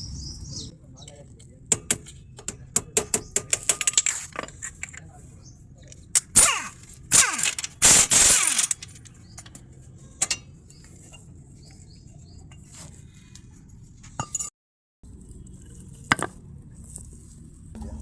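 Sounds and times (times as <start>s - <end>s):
metal parts scraping and clattering: 3.5s - 5.1s, 6.1s - 11.2s.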